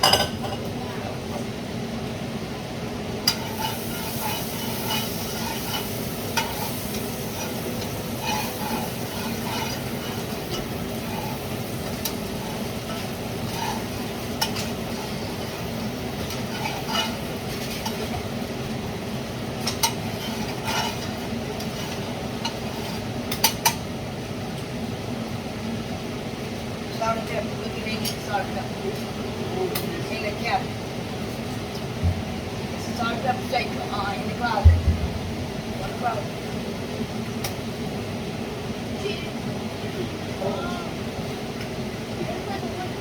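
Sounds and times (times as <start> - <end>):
food sizzling in a pan: 3.0 - 23.9
utensil scraping cookware: 3.3 - 18.3, 19.6 - 23.8.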